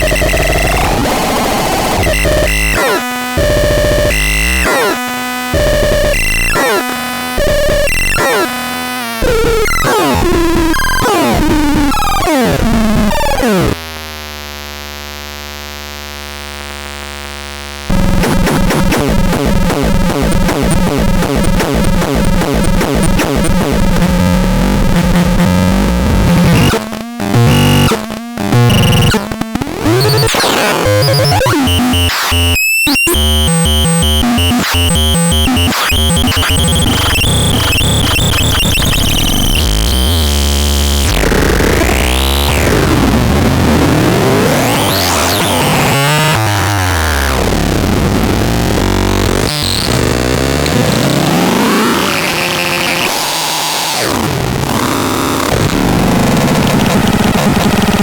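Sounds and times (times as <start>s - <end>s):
synthesized electronic tones: 0.0s - 13.8s, 17.9s - 47.7s.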